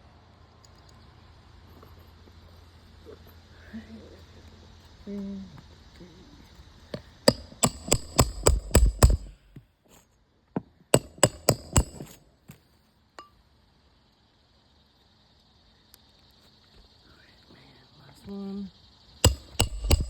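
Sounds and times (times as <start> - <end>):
hammer striking metal: 7.3 - 9.5, 11.0 - 12.2, 19.2 - 20.0.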